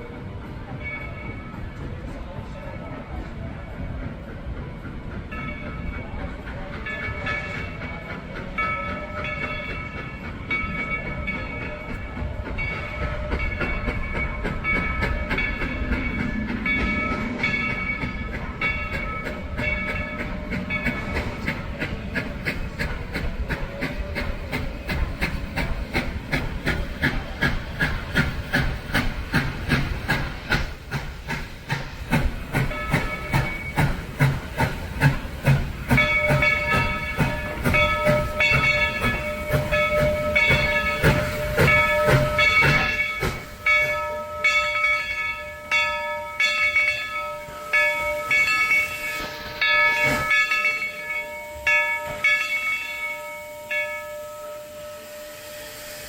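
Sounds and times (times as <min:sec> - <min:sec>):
steam locomotive chuffing: 0:00.0 - 0:56.0
steam whistle: 0:53.2 - 0:56.0.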